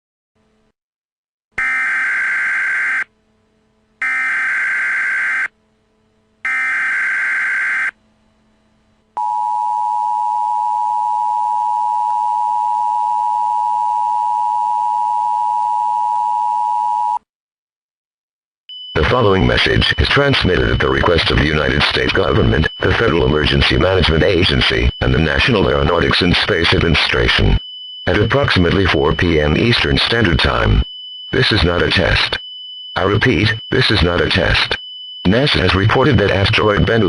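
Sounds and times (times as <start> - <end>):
digital data bursts: 18.9 - 32.4, 33.0 - 37.0.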